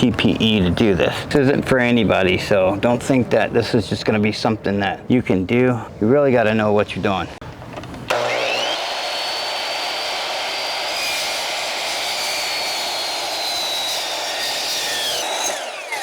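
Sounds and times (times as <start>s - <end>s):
miter saw motor whine: 8.1s - 16.0s
saw blade cutting log: 8.1s - 16.0s.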